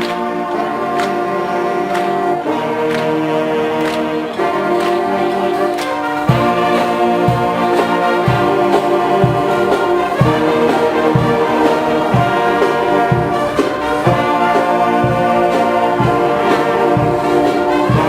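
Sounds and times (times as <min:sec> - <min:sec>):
marching band brass playing: 0:00.0 - 0:18.0
low drum beat: 0:04.7 - 0:18.0.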